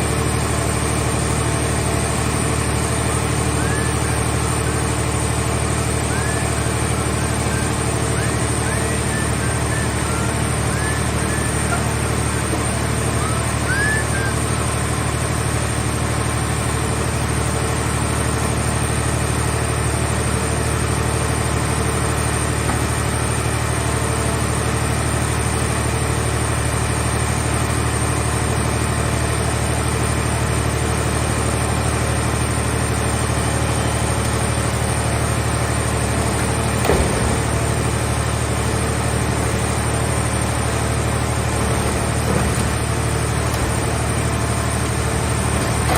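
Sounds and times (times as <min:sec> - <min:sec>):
baler engine running: 0:00.0 - 0:45.9
high whine: 0:02.3 - 0:16.7.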